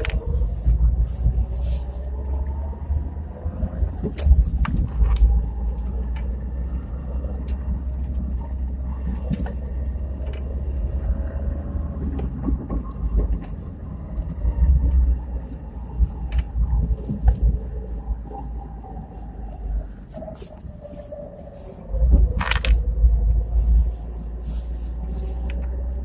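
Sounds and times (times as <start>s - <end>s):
road and drivetrain rumble: 0.0s - 26.0s
drivetrain knocks and clicks: 3.9s - 11.2s, 11.9s - 18.0s.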